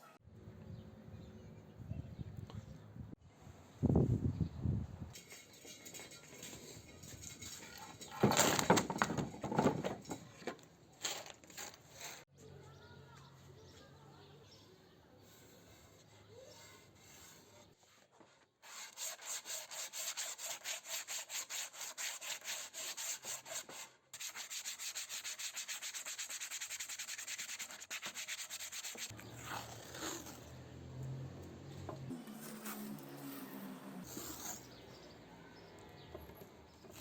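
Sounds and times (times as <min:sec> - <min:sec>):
sandpaper rubbing on wood: 0:15.3 - 0:18.0, 0:18.6 - 0:30.4.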